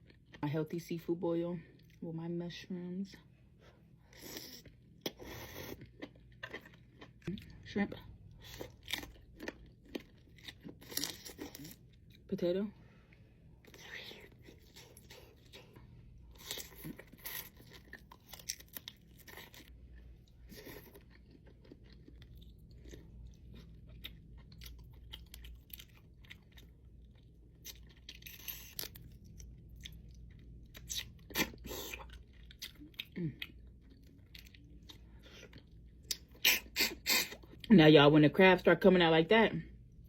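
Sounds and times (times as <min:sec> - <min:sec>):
chewing and biting: 0:04.2 - 0:07.6, 0:08.3 - 0:12.2, 0:13.6 - 0:37.7.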